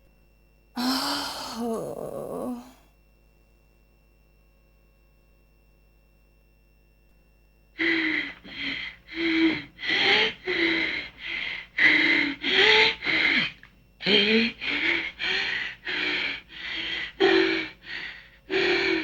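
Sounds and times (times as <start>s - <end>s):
heavy breathing with gasps: 0.8s - 2.8s, 7.8s - 19.0s.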